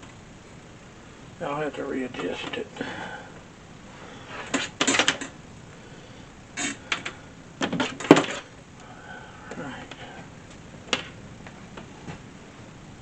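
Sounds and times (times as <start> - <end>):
hard parts clattering and knocking: 4.4 - 5.4.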